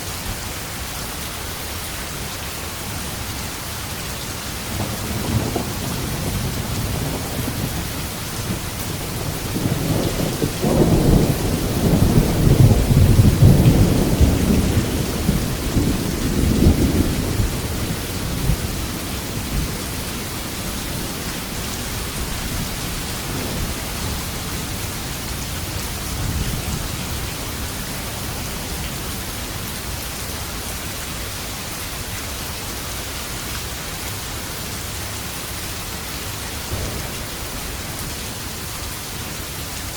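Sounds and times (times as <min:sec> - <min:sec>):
steady rain: 0:00.0 - 0:39.9
thunder rumbling: 0:04.4 - 0:30.0, 0:36.5 - 0:39.8.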